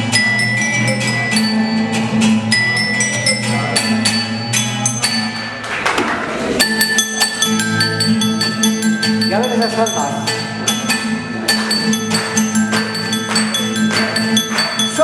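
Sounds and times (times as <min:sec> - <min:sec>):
bass line: 0:00.0 - 0:05.6
tuned percussion tubes melody: 0:00.0 - 0:15.0.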